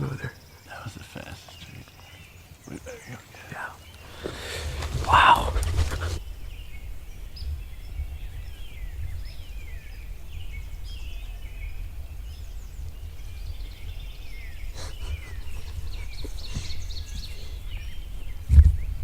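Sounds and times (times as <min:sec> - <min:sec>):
songbirds chirping and whistling: 0:00.0 - 0:19.0
low rumble on microphone: 0:03.8 - 0:19.0
brief rustles: 0:03.9 - 0:06.2.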